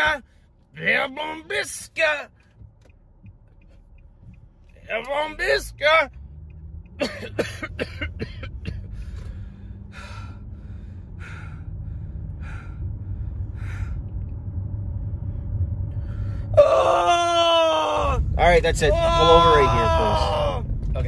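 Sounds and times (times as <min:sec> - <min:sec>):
car cabin rumble: 0:00.0 - 0:21.0
loud yell: 0:16.6 - 0:18.2, 0:18.8 - 0:20.6.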